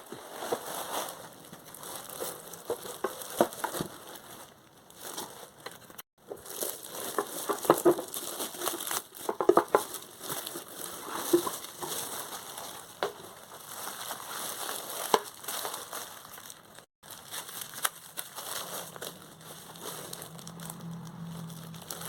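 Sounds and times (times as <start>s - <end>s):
packaging crinkling: 0.1s - 22.0s.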